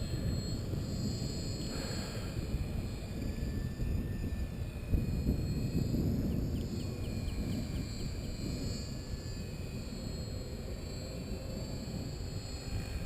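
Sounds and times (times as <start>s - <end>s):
faint electric motor whine: 0.0s - 13.0s
wind buffeting microphone: 0.0s - 13.0s
bird chirping trill: 5.4s - 8.6s.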